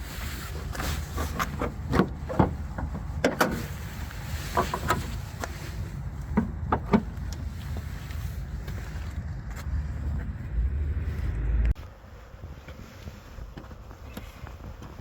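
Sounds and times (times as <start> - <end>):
steady low rumble: 0.0 - 11.9
knocks and clunks: 0.7 - 3.8, 6.3 - 7.5.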